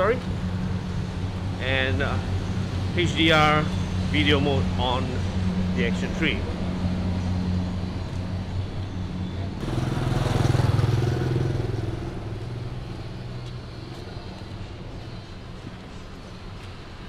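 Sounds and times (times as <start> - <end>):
engine humming: 0.0 - 17.0
motor vehicle passing close: 9.5 - 14.7.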